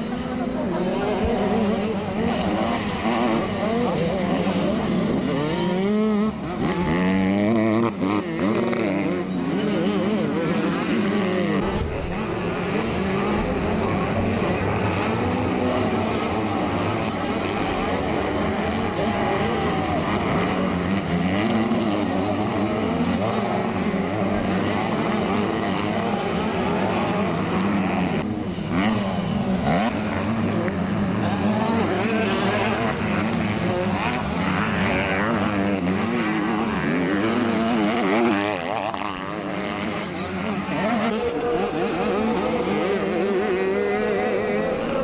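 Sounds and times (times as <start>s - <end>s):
motocross bike engines revving: 0.0s - 45.0s.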